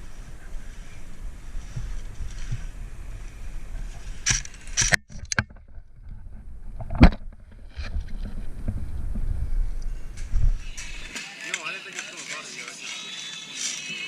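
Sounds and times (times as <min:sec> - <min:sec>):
low rumbling handling noise: 0:00.0 - 0:11.1.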